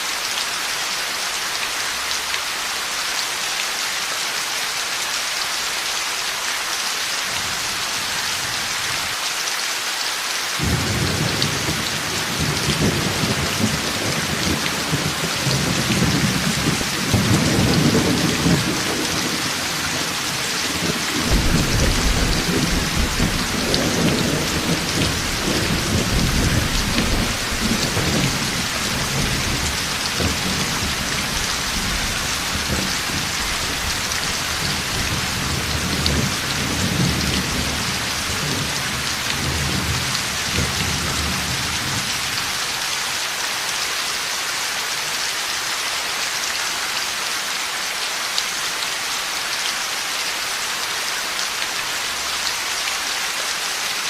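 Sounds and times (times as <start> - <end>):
heavy rain falling: 0.0 - 54.0
thunder rumbling: 10.6 - 42.1.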